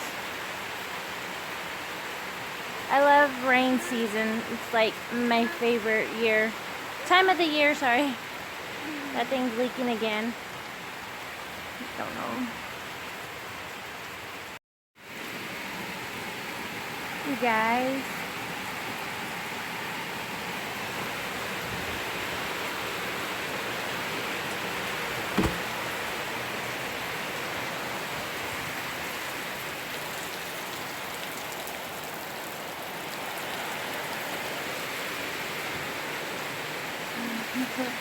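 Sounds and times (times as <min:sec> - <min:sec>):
heavy rain falling: 0:00.0 - 0:38.0
short knock: 0:25.3 - 0:25.7.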